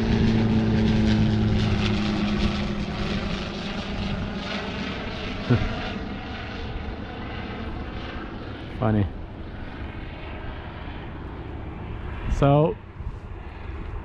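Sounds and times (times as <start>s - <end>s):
propeller plane engine droning: 0.0s - 14.0s.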